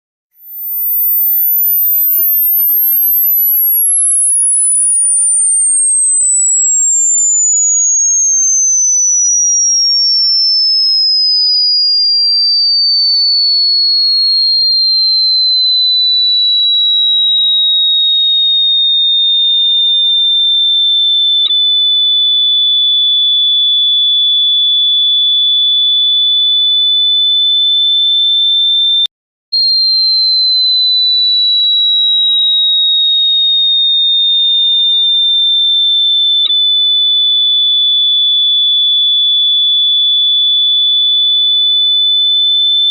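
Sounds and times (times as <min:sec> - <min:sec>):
gliding electronic ringtone: 0:00.4 - 0:10.9.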